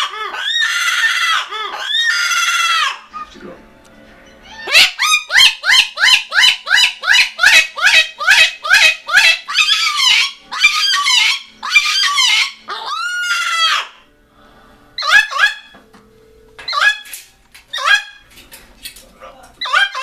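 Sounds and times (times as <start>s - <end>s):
cockatoo screaming: 0.0s - 3.2s, 4.5s - 14.1s, 15.0s - 15.7s, 17.7s - 18.2s, 19.6s - 20.0s.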